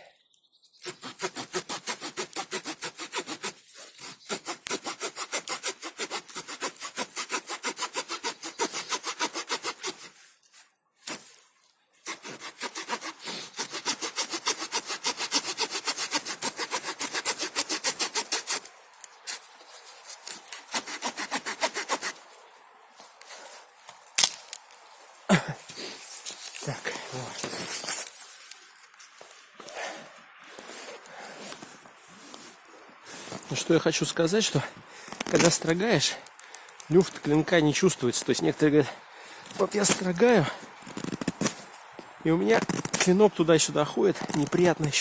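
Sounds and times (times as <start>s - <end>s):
saw rasping through wood: 0.8s - 10.2s, 12.0s - 18.7s, 20.3s - 22.2s.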